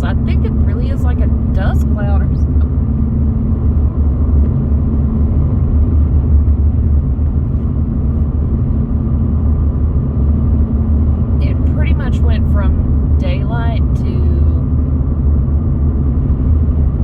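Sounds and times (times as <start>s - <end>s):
faint constant hum: 0.0s - 17.0s
road and engine rumble in car: 0.0s - 17.0s.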